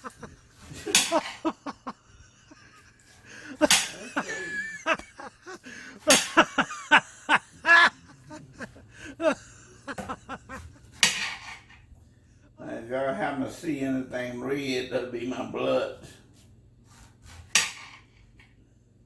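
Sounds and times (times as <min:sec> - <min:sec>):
man talking: 0:12.6 - 0:16.2.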